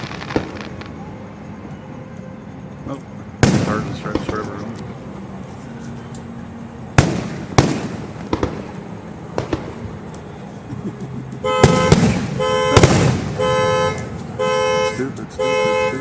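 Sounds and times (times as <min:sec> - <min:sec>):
fireworks bursting: 0:00.0 - 0:01.7, 0:03.3 - 0:04.8, 0:06.9 - 0:14.4
car alarm horn blasts: 0:11.4 - 0:16.0.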